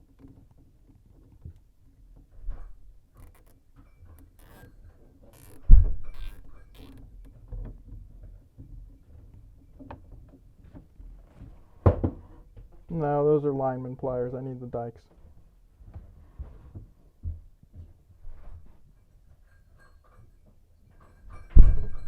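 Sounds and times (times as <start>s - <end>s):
tools being handled: 3.2s - 7.0s.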